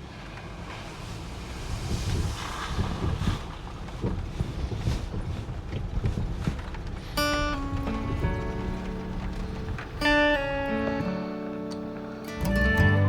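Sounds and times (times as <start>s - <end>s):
wind buffeting microphone: 1.2s - 11.0s.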